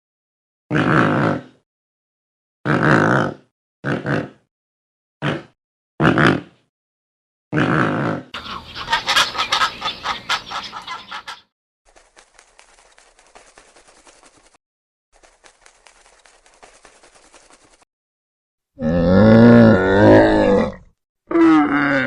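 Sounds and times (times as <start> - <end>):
animal grunts: 0.7 - 1.6, 2.7 - 4.5, 7.5 - 8.3
deep animal call: 18.8 - 22.0.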